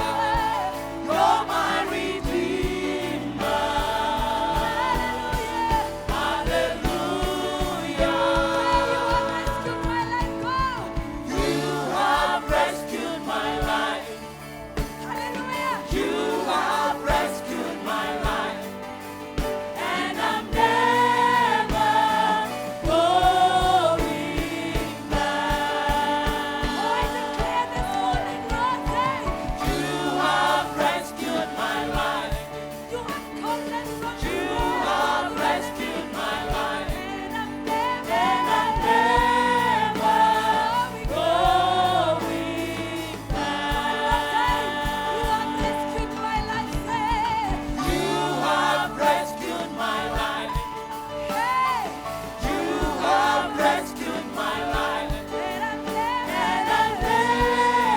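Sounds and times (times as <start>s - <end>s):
choir and congregation singing: 0.0s - 57.9s
steady drum beat: 0.0s - 57.9s.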